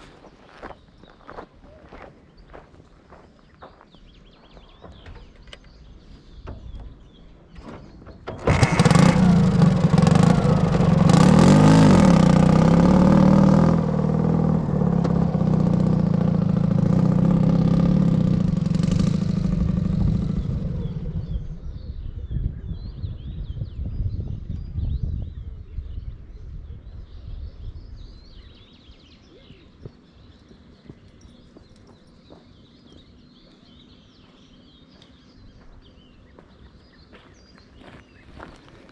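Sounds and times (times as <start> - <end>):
faint birdsong: 0.0 - 38.9
motorcycle engine starting and revving: 5.2 - 22.9.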